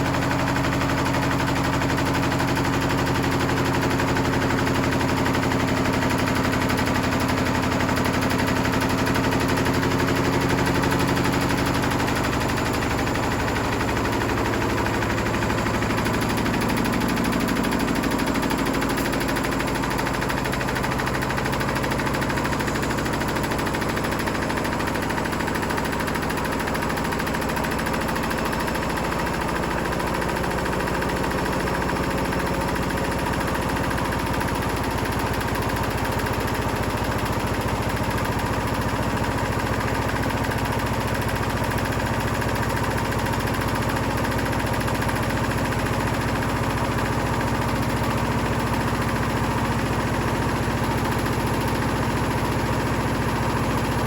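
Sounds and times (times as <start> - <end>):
washing machine motor hum: 0.0 - 54.0.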